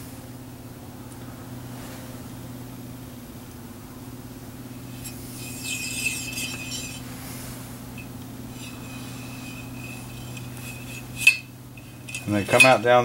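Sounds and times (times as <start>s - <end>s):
steady low hum: 0.0s - 13.0s
cleaning rod scraping in barrel: 4.8s - 13.0s.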